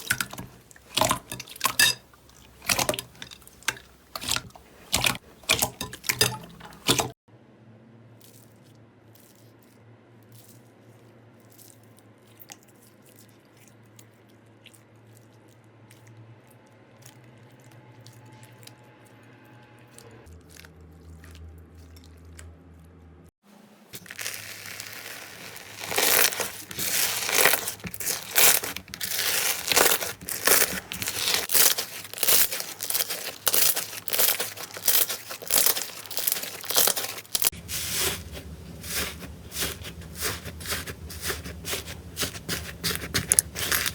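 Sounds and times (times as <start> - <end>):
slime crackling and crunching: 0.0 - 7.2, 24.0 - 43.9.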